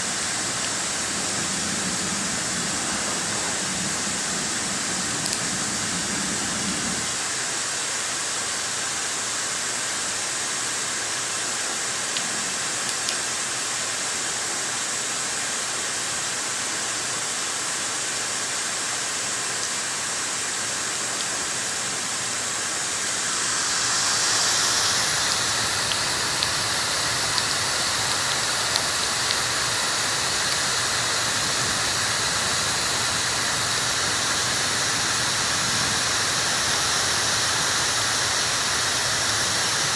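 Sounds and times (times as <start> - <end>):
hair dryer blowing: 0.0 - 8.0, 20.0 - 39.9
faint ticks: 24.7 - 33.5.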